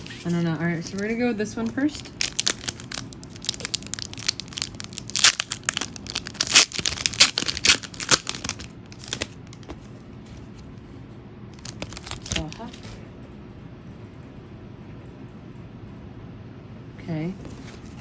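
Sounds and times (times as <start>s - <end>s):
foil wrapper crinkling and tearing: 0.0s - 9.7s, 11.6s - 12.9s.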